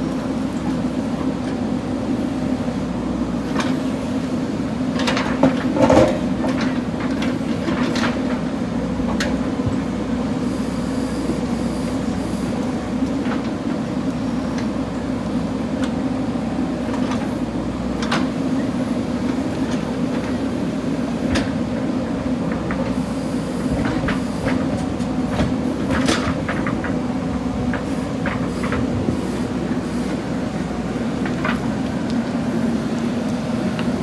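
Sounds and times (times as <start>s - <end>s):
diesel engine running: 0.0s - 34.0s.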